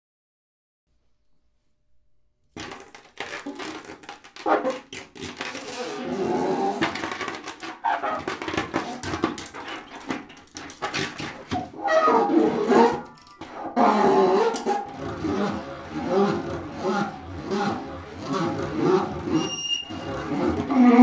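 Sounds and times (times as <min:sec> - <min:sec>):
scraping: 0:02.6 - 0:21.0
wavering pitched squeals: 0:11.6 - 0:21.0.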